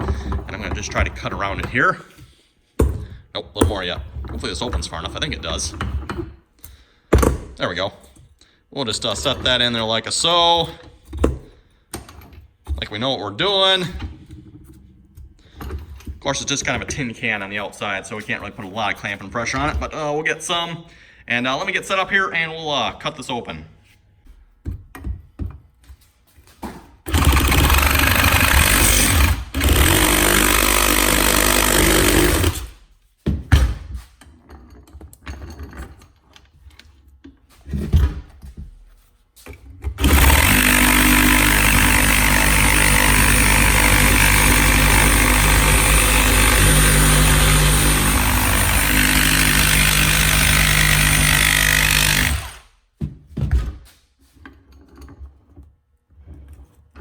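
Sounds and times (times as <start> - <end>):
reciprocating saw cutting metal: 27.1 - 32.8, 40.0 - 52.6
knocks and clanks: 39.9 - 53.9.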